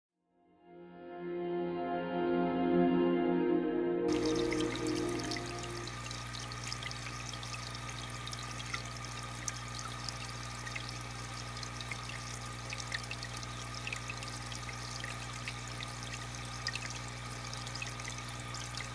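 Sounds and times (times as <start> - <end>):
low hum: 0.7 - 6.8
aquarium water trickling: 4.1 - 18.9
small bubbling ticks: 5.9 - 18.9.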